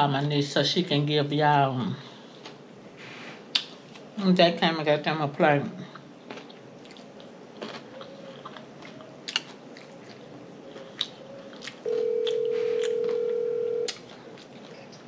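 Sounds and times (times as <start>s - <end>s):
chewing food: 5.9s - 15.0s
phone ringback tone: 11.8s - 13.9s.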